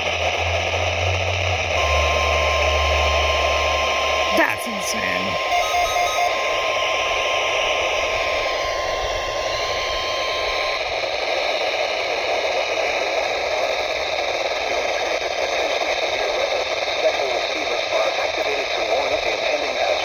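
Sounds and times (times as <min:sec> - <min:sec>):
faint steady alarm tone: 0:01.7 - 0:12.6
radio static hiss: 0:01.8 - 0:20.0.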